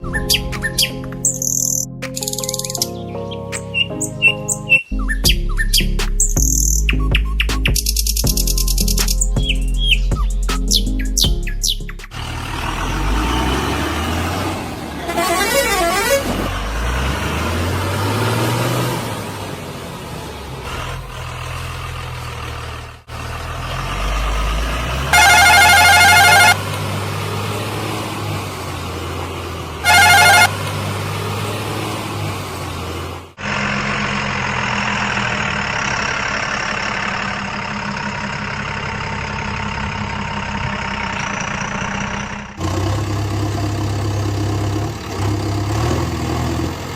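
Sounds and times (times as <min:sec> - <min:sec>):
heavy diesel engines: 0:12.0 - 0:46.9
vehicle horn: 0:15.0 - 0:16.6, 0:25.0 - 0:26.8, 0:29.8 - 0:30.8.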